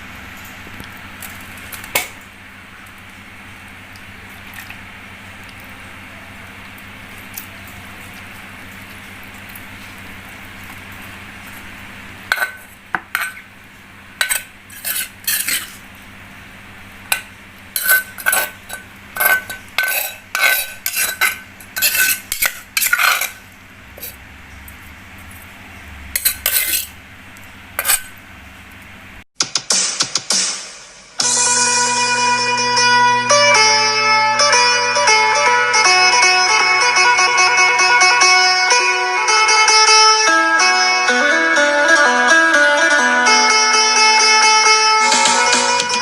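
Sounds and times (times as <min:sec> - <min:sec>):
low steady hum: 0:00.0 - 0:29.2
metal utensil scraping a dish: 0:12.3 - 0:13.4, 0:14.2 - 0:15.8, 0:17.1 - 0:24.2, 0:26.2 - 0:27.0, 0:27.8 - 0:28.2.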